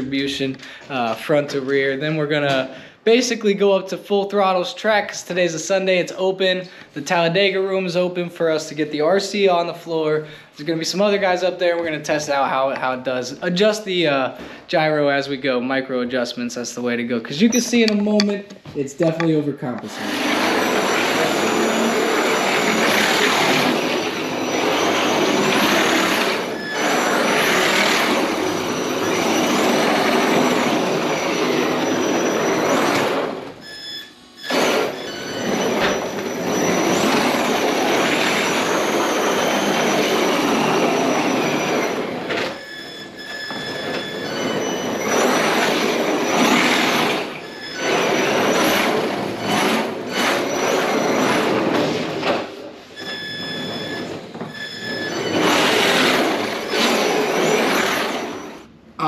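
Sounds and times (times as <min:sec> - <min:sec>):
electric motor whine: 0:20.0 - 0:33.6.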